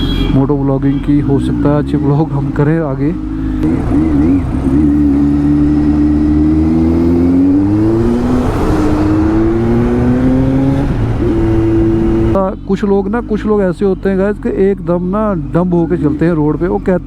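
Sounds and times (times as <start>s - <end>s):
motorcycle engine accelerating: 1.4s - 12.4s.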